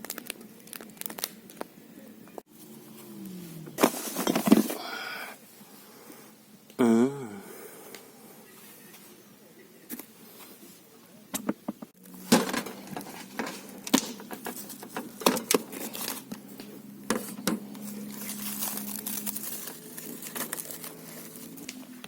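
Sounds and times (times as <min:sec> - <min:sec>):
crinkling and rustling: 0:00.0 - 0:01.7, 0:02.4 - 0:04.8, 0:11.4 - 0:22.0.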